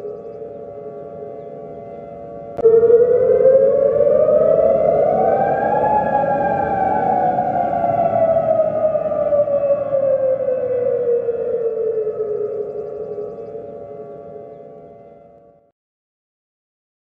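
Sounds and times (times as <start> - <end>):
faint steady tone: 0.0 - 4.5, 9.9 - 15.7
warning siren: 0.0 - 15.7.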